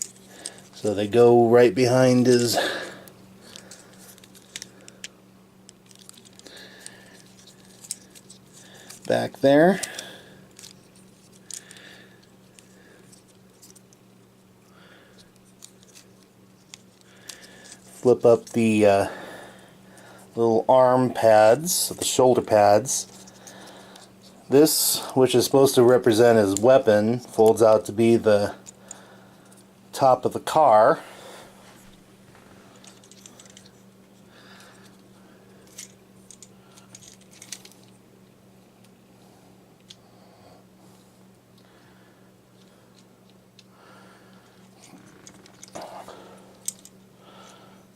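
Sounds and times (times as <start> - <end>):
steady low hum: 0.0 - 47.9
plastic toy parts clicking: 45.1 - 45.8, 46.6 - 46.9
plastic action figure parts clicking: 46.6 - 46.9.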